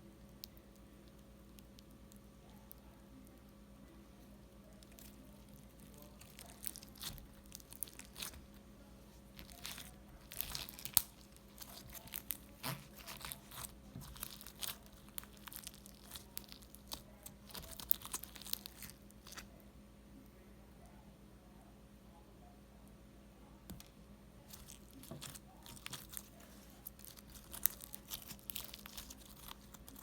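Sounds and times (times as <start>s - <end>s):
slime crackling and popping: 4.8s - 8.6s, 9.3s - 19.5s, 24.5s - 30.0s.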